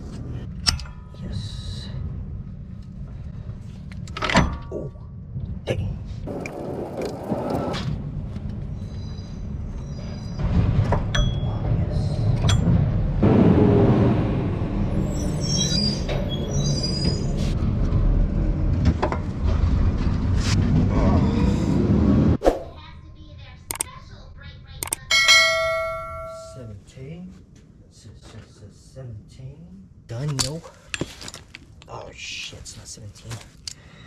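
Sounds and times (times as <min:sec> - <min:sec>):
loud rumbling noise: 0:12.2 - 0:15.4, 0:17.6 - 0:22.4.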